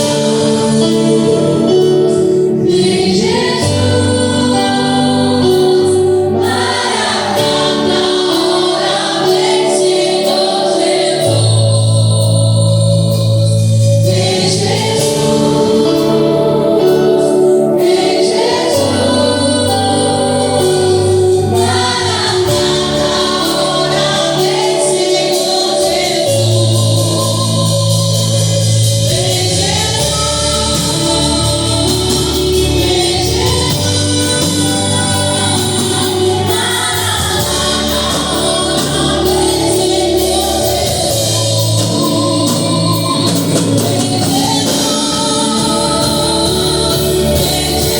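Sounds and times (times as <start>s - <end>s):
choir singing: 0.0s - 47.9s.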